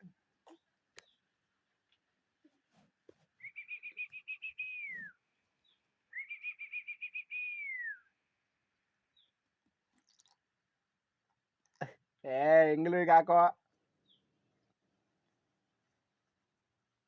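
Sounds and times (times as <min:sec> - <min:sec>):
high bird-like whistled call: 0:03.4 - 0:05.2, 0:06.1 - 0:08.2.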